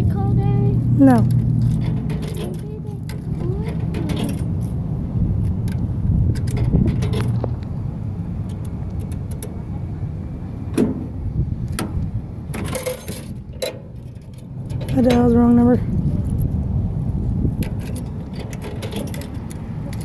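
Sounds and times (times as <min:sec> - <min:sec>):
highway traffic rumble: 0:00.0 - 0:20.0
payphone clicks and rattles: 0:01.0 - 0:04.8, 0:05.4 - 0:07.7, 0:11.8 - 0:16.6, 0:17.6 - 0:20.0.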